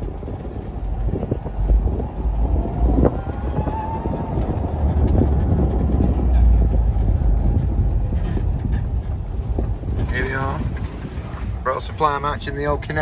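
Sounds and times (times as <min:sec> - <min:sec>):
wind buffeting microphone: 0:00.0 - 0:13.0
faint rising whine: 0:00.8 - 0:07.0.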